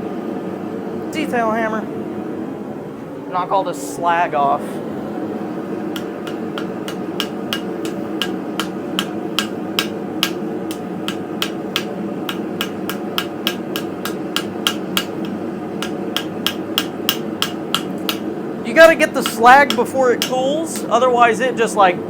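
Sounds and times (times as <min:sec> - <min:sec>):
steady background noise: 0:00.0 - 0:22.0
hammer tapping on steel: 0:05.9 - 0:21.0.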